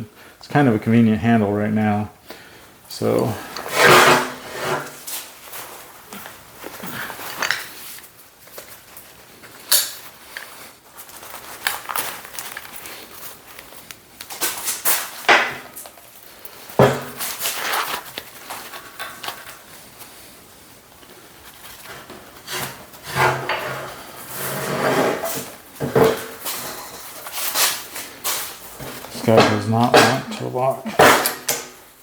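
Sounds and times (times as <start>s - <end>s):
metal scraping and rubbing: 3.6s - 5.3s, 21.9s - 31.6s
metal knocks and clunks: 28.8s - 31.8s.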